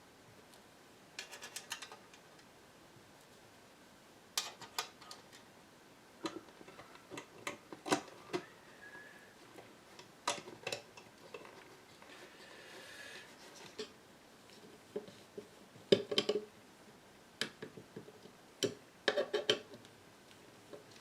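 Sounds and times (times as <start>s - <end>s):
tools clicking and tapping: 1.2s - 2.5s.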